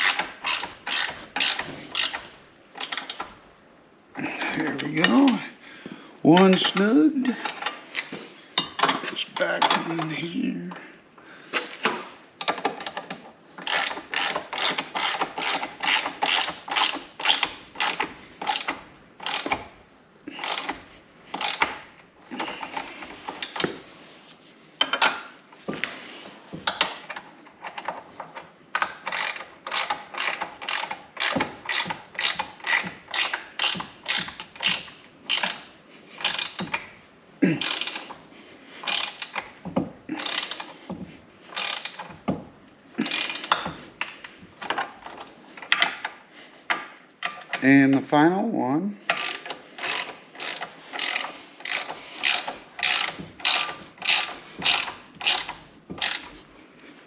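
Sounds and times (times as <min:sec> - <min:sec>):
hand ratchet clicking: 0:00.0 - 0:03.4, 0:11.8 - 0:23.8, 0:26.7 - 0:42.4, 0:43.0 - 0:46.2, 0:49.0 - 0:56.5.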